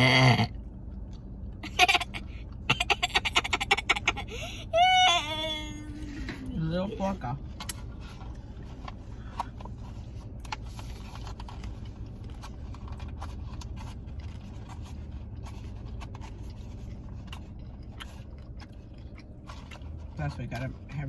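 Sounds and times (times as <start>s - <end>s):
car cabin rumble: 0.0s - 21.0s
food containers and wrappers handled: 7.0s - 21.0s.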